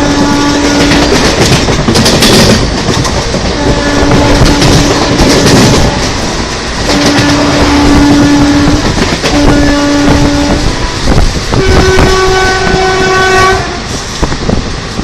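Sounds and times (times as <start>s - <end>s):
two-tone train horn: 0.0s - 1.2s, 3.5s - 6.1s, 6.9s - 14.0s
train rumbling and clattering: 0.0s - 15.0s.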